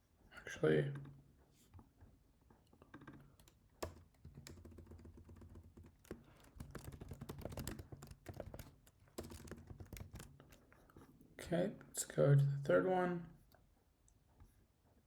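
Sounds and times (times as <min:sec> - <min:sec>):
typing on a computer keyboard: 0:03.1 - 0:10.7.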